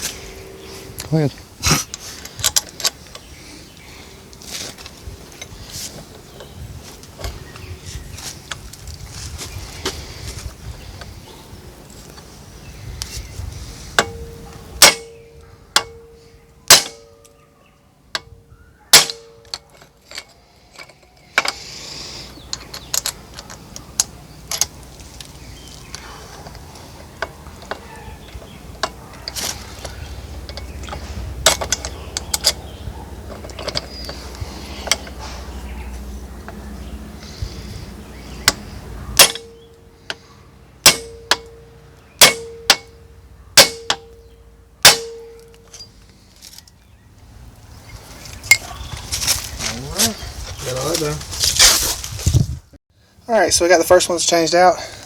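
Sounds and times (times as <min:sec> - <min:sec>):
tools and parts clinking: 0:00.0 - 0:10.0, 0:13.9 - 0:17.5, 0:18.1 - 0:36.7, 0:38.4 - 0:46.9, 0:47.8 - 0:51.8
hammer striking steel: 0:14.0 - 0:15.2, 0:15.8 - 0:17.2, 0:18.9 - 0:19.5, 0:39.2 - 0:39.7, 0:40.8 - 0:43.0, 0:43.6 - 0:45.8.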